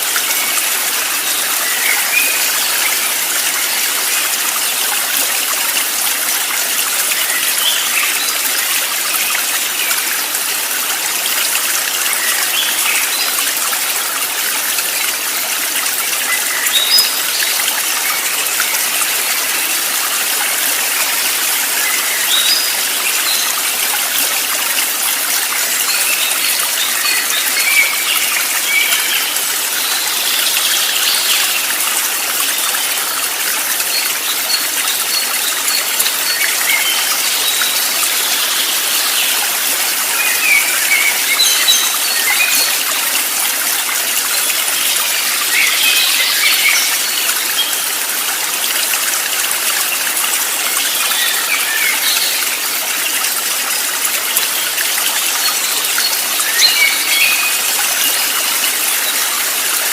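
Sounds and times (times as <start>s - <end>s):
stream of running water: 0.0s - 59.9s.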